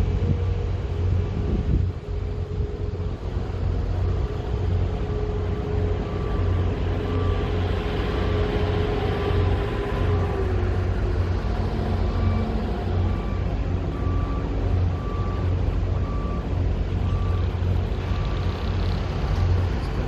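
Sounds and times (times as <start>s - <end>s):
heavy machinery rumbling: 0.0s - 20.0s
reversing alarm beeping: 4.1s - 10.4s, 11.2s - 18.9s.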